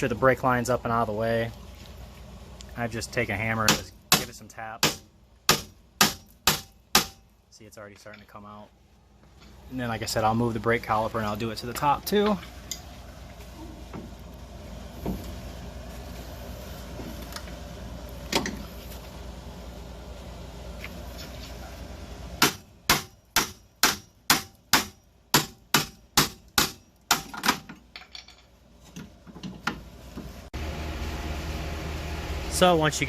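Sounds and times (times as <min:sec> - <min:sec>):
hammer striking metal hub: 0:22.4 - 0:28.5.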